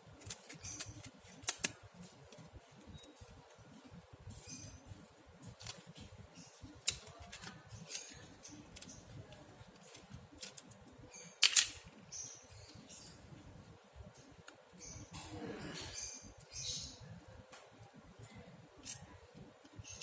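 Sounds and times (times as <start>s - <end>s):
phone parts clicking: 10.4s - 12.0s.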